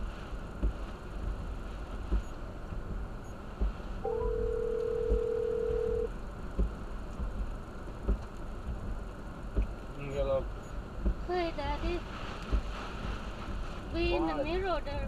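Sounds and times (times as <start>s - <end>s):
storm noise in a car: 0.0s - 15.0s
telephone ringback tone: 4.1s - 6.1s.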